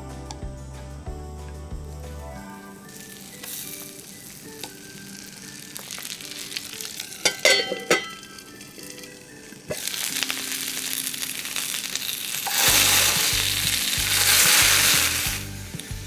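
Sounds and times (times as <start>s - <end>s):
soft background music: 0.0s - 16.0s
food sizzling in a pan: 2.5s - 16.0s
utensil clattering against pan: 7.0s - 8.4s.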